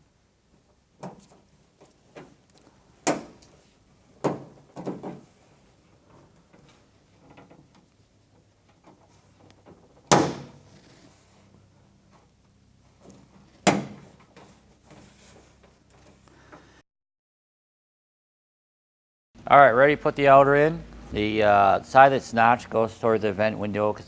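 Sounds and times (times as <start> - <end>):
quiet handling sounds: 0.1 - 16.8
clips pounded into metal door: 10.1 - 10.6, 13.6 - 14.1.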